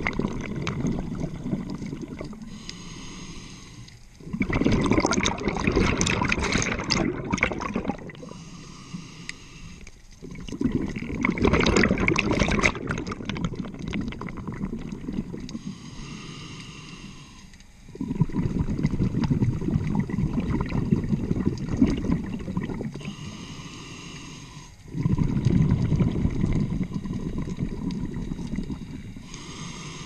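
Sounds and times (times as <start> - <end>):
exhaled bubbles underwater: 0.0 - 2.8, 4.2 - 8.5, 10.1 - 16.2, 17.2 - 23.6, 24.2 - 30.0
diver inhaling through regulator: 0.0 - 4.1, 7.8 - 10.9, 14.2 - 19.7, 20.5 - 30.0.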